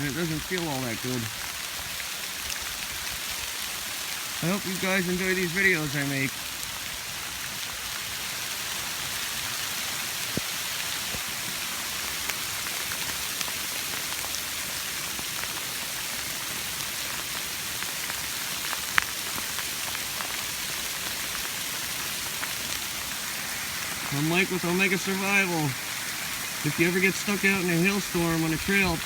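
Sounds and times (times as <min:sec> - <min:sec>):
hailstones striking: 0:00.0 - 0:01.8, 0:17.8 - 0:29.0
hail falling: 0:00.0 - 0:29.0.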